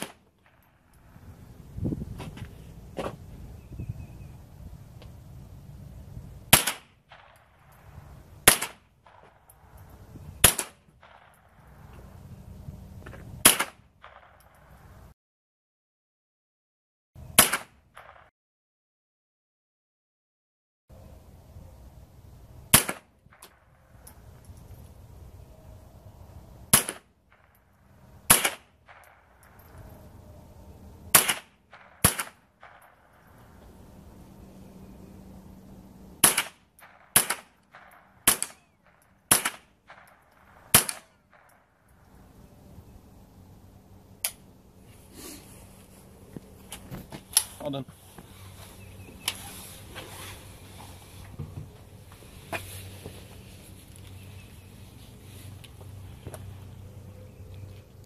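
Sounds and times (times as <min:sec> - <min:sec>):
rifle shots: 0:00.0 - 0:00.7, 0:06.5 - 0:09.5, 0:10.4 - 0:11.9, 0:13.4 - 0:14.5, 0:17.4 - 0:18.3, 0:22.7 - 0:24.0, 0:26.7 - 0:27.6, 0:28.2 - 0:29.6, 0:31.1 - 0:33.4, 0:36.2 - 0:41.8.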